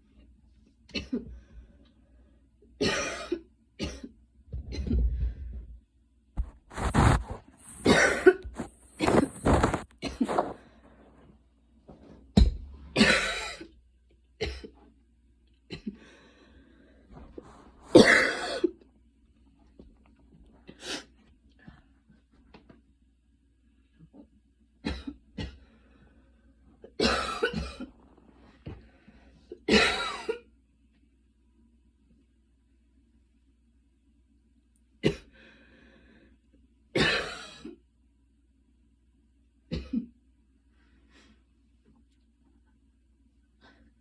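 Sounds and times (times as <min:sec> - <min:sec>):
woman coughing: 0:02.8 - 0:04.1, 0:06.7 - 0:10.4, 0:13.0 - 0:13.6, 0:17.9 - 0:18.6, 0:29.7 - 0:30.4, 0:37.0 - 0:37.7, 0:39.7 - 0:40.1.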